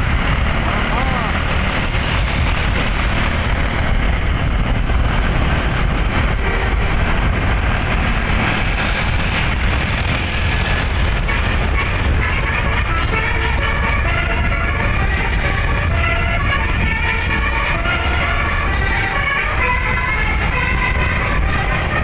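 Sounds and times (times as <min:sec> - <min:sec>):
road traffic rumble: 0:00.0 - 0:22.0.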